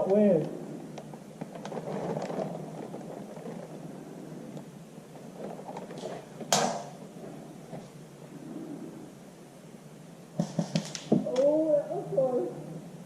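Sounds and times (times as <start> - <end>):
low rustling of movement: 0.0 - 11.4.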